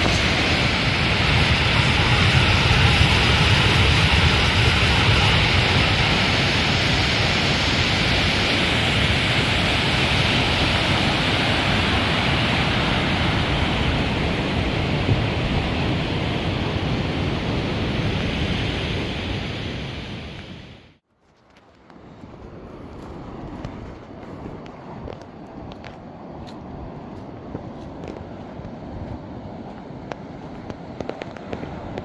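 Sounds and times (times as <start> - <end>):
whitewater rapids roaring: 0.0 - 14.9.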